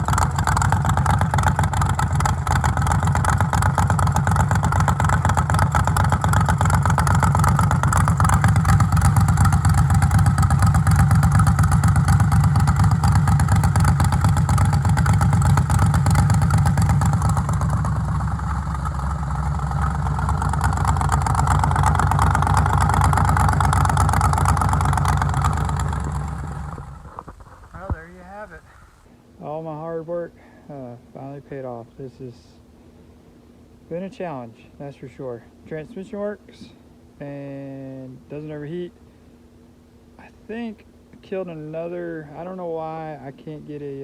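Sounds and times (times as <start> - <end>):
car engine running: 0.0 - 29.0.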